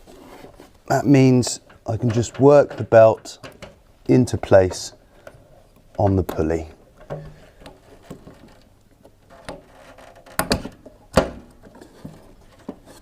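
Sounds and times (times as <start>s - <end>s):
clicks and knocks of dryer parts: 1.4s - 3.8s, 6.0s - 12.9s.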